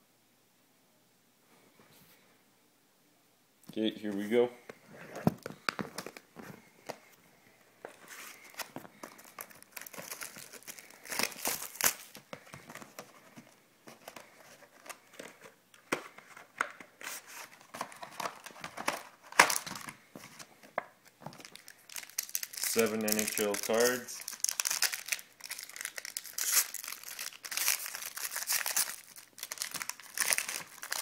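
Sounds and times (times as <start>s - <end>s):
plastic wrapping crinkling and tearing: 8.0s - 15.5s, 17.0s - 31.0s.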